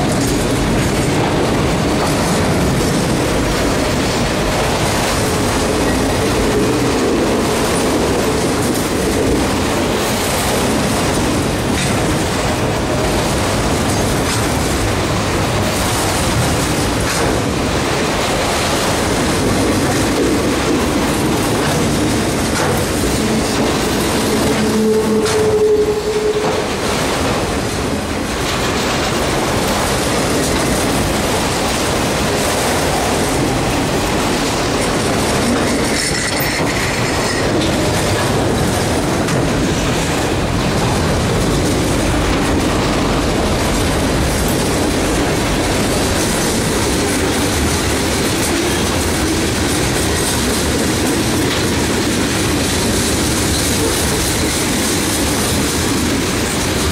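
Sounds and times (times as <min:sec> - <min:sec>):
freight train rumbling on rails: 0:00.0 - 0:56.9
wheels clattering over rail joints: 0:00.0 - 0:56.9
train wheel squeal: 0:23.2 - 0:26.8, 0:35.6 - 0:37.5.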